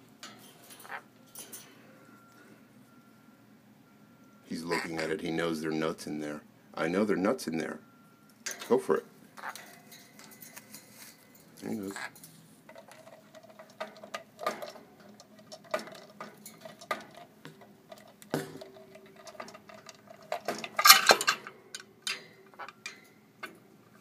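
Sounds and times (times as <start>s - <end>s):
toy chest clattering: 12.0s - 23.0s.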